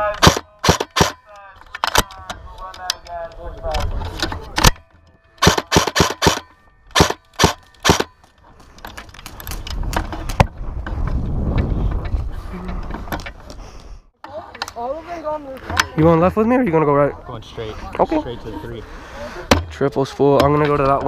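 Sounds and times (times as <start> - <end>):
airsoft gun shots: 0.2 - 1.2, 5.4 - 8.1.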